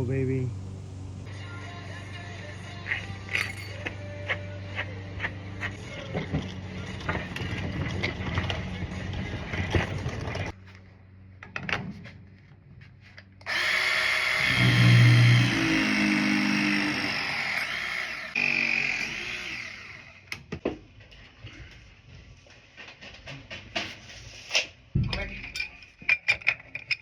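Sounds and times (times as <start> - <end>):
handheld power tool running: 13.4 - 20.3.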